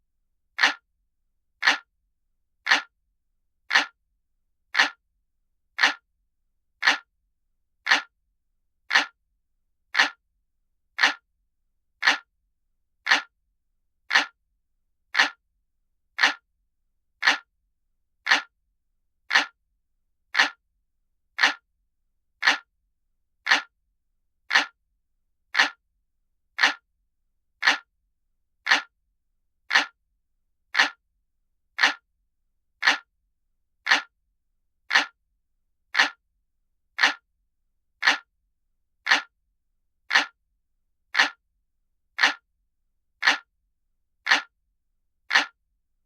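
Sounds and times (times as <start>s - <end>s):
clock ticking: 0.6s - 0.8s, 1.6s - 1.9s, 2.7s - 2.9s, 3.7s - 4.0s, 4.8s - 5.0s, 5.8s - 6.0s, 6.8s - 7.1s, 7.9s - 8.1s, 8.9s - 9.2s, 10.0s - 10.2s, 11.0s - 11.2s, 12.0s - 12.3s, 13.1s - 13.3s, 14.1s - 14.4s, 15.2s - 15.4s, 16.2s - 16.4s, 17.2s - 17.5s, 18.3s - 18.5s, 19.3s - 19.6s, 20.4s - 20.6s, 21.4s - 21.6s, 22.4s - 22.7s, 23.5s - 23.7s, 24.5s - 24.8s, 25.6s - 25.8s, 26.6s - 26.8s, 27.6s - 27.9s, 28.7s - 28.9s, 29.7s - 30.0s, 30.8s - 31.0s, 31.8s - 32.0s, 32.8s - 33.1s, 33.8s - 34.1s, 34.9s - 35.2s, 35.9s - 36.2s, 37.0s - 37.2s, 38.0s - 38.3s, 39.0s - 39.3s, 40.1s - 40.4s, 41.1s - 41.4s, 42.2s - 42.4s, 43.2s - 43.5s, 44.2s - 44.5s, 45.3s - 45.6s.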